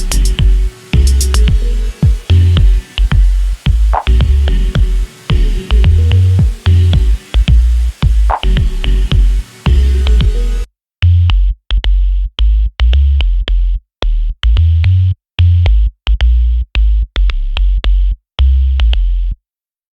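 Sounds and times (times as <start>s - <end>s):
stuttering electronic music: 0.0s - 10.7s.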